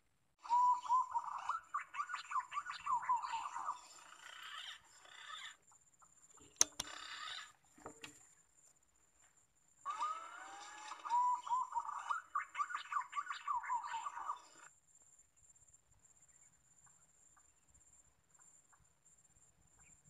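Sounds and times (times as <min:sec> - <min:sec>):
pigeons whistling calls: 0:00.4 - 0:04.8, 0:09.9 - 0:14.7
sharp click: 0:06.5 - 0:07.0.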